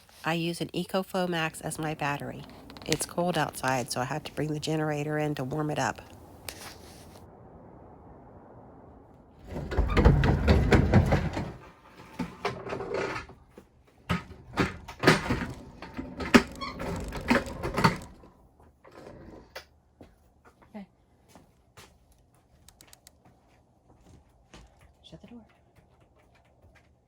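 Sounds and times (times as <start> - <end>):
knocks clunks and scrapes: 1.5 - 7.2, 9.4 - 19.7
loud low rumbling: 1.5 - 10.6.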